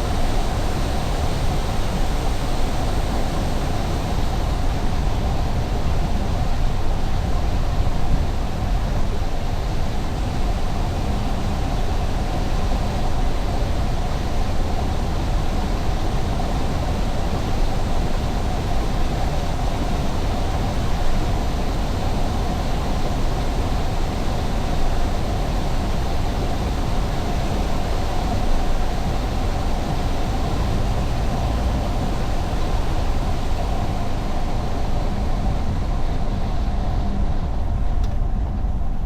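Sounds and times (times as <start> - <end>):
car road and tyre noise: 30.1 - 38.8.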